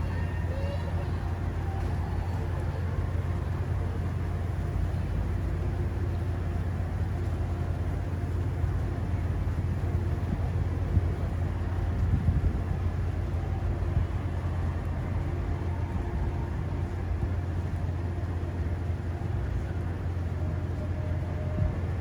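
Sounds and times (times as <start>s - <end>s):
strong wind buffeting microphone: 0.0s - 22.0s
traffic noise: 0.0s - 22.0s.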